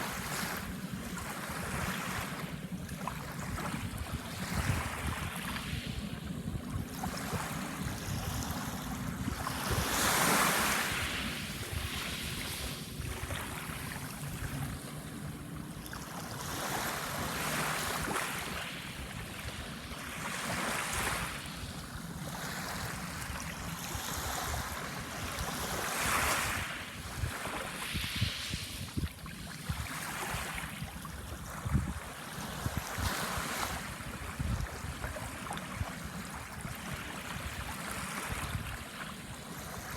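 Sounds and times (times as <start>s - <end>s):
sea waves breaking on shore: 0.0s - 39.9s
wind rumble on microphone: 0.0s - 39.9s.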